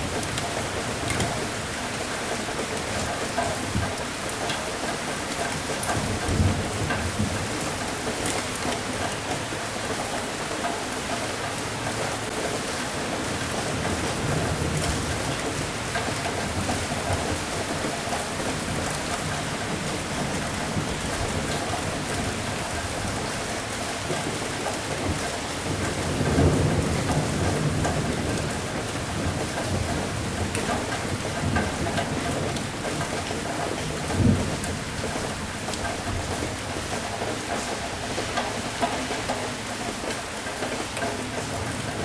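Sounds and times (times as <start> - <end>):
steady rain falling: 0.0 - 42.0
thunder rumble: 25.0 - 37.0.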